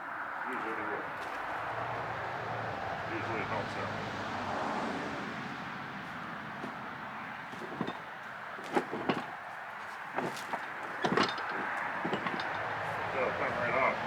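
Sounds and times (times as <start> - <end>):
knocks and clanks on wood and metal: 6.6 - 6.8, 7.4 - 14.0.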